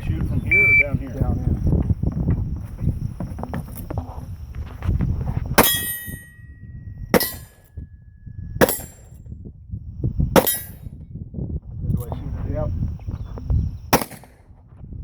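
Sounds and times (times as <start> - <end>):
steel target clang ringing: 5.6 - 7.7, 8.6 - 9.2, 10.4 - 10.8, 14.0 - 14.3
rifle shots: 14.0 - 14.4.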